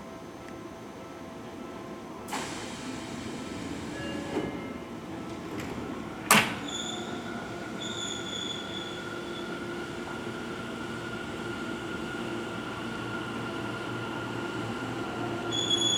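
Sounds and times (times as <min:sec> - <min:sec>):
train doors thumping shut: 0:02.3 - 0:07.3
high-pitched electric train tones: 0:15.5 - 0:15.9.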